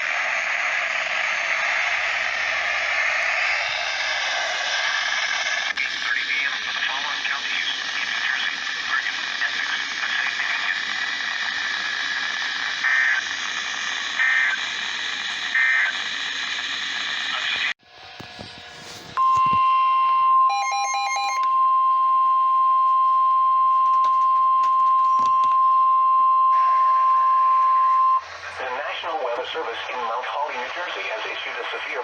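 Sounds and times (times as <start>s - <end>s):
radio static: 0.1s - 19.7s, 27.9s - 32.0s
screechy data bursts: 1.1s - 17.6s.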